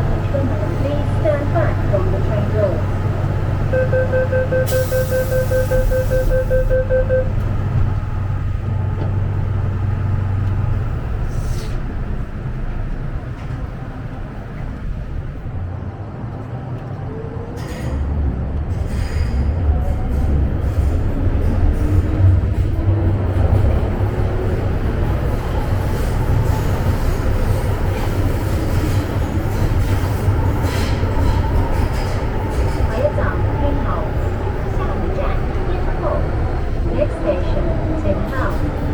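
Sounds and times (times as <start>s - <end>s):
electric train rumble and hum: 0.0s - 38.9s.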